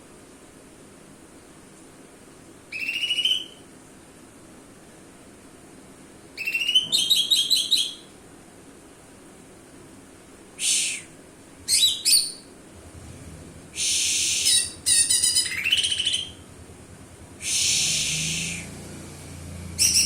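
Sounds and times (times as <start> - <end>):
bird singing rapid stuttering notes: 11.7 - 20.0.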